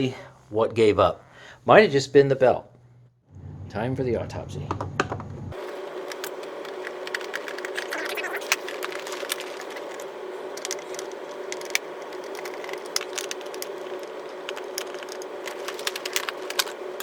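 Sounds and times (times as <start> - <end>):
steady low hum: 0.0 - 17.0
vacuum cleaner being handled: 10.6 - 16.8.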